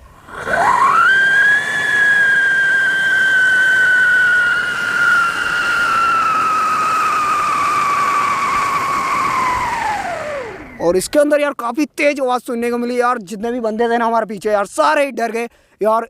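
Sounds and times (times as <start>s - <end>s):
whistling firecracker shrieking: 0.3s - 10.8s.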